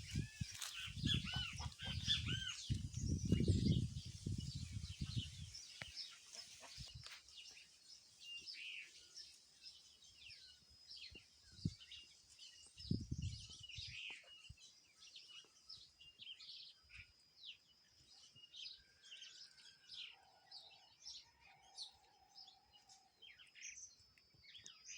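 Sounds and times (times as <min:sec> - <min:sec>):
chickens calling faintly: 0:00.0 - 0:02.9, 0:05.0 - 0:07.8
songbirds chirping and twittering: 0:00.0 - 0:24.9.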